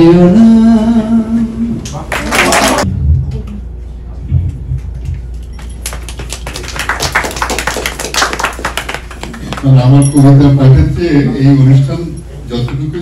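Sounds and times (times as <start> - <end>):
audience applauding: 2.1 - 2.9, 5.6 - 9.9.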